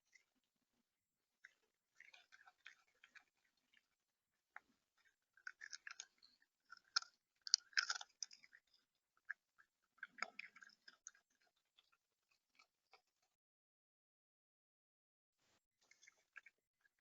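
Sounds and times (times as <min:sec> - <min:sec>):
bird pecking and cracking seed: 0:05.0 - 0:11.3.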